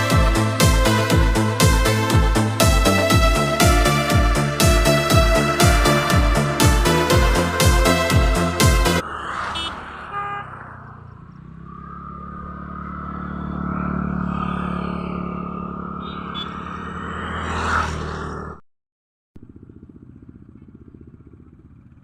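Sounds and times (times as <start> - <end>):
electronic music with beat: 0.0 - 9.0
vehicle engine hum: 0.0 - 18.6, 19.4 - 22.0.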